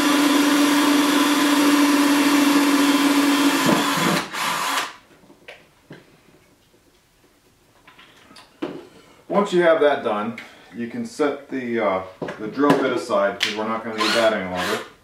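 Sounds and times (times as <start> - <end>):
electric drill boring into metal: 0.0 - 5.0, 14.0 - 14.9.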